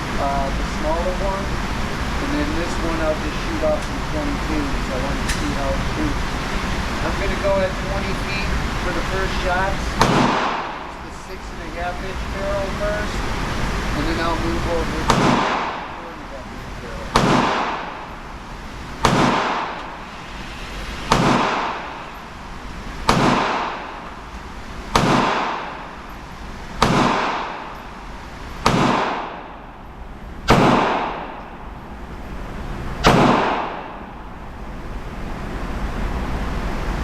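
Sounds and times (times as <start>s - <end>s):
revolver shots with echo: 10.0s - 11.1s, 15.0s - 16.2s, 17.0s - 18.2s, 19.0s - 20.0s, 21.0s - 22.1s, 23.0s - 24.1s, 24.9s - 26.0s, 26.7s - 29.8s, 30.4s - 31.6s, 33.0s - 34.2s.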